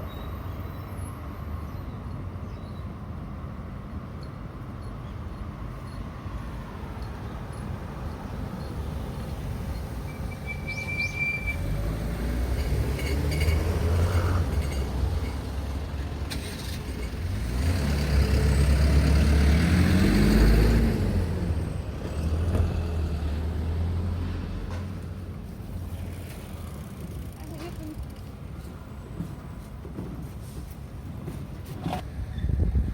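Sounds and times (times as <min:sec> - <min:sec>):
vehicles driving past: 0:00.0 - 0:29.7
short high squeal: 0:09.8 - 0:11.7
engine rising and falling in pitch: 0:17.3 - 0:24.8.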